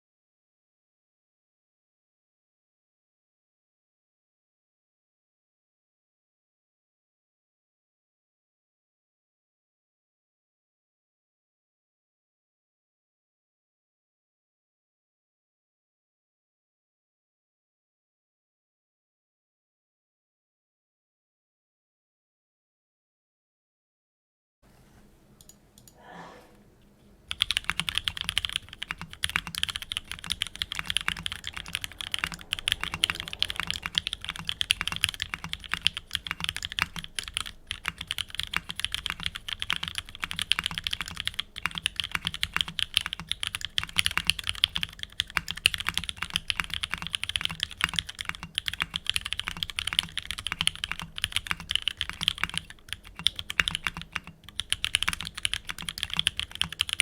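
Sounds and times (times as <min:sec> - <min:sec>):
fast mechanical keyboard typing: 0:27.3 - 0:57.0.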